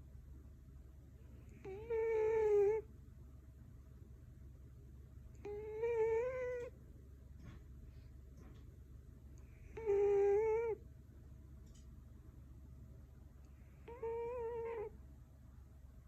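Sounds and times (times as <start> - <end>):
cat snoring: 1.5 - 2.8, 5.4 - 6.7, 9.4 - 10.8, 13.6 - 14.9.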